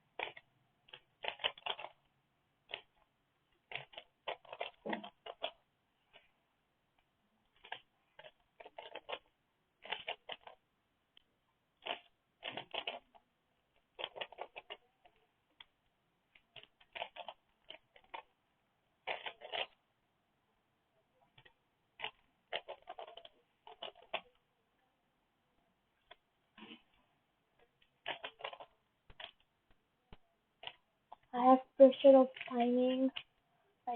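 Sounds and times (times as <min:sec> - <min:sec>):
puzzle cube clicking turns: 0:00.1 - 0:06.3, 0:07.5 - 0:18.4, 0:19.0 - 0:19.8, 0:21.3 - 0:24.4, 0:26.0 - 0:26.3, 0:27.6 - 0:31.3, 0:32.3 - 0:33.4.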